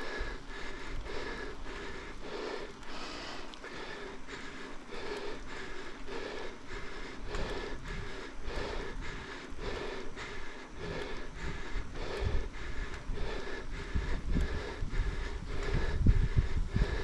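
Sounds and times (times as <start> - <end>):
person breathing hard: 0.0 - 17.0
wind rumble on microphone: 6.0 - 17.0.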